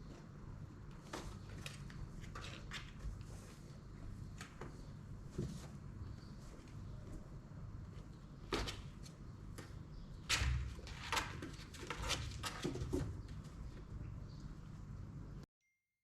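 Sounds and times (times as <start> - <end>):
kittens scratching cardboard: 0.0 - 6.9, 7.9 - 13.9.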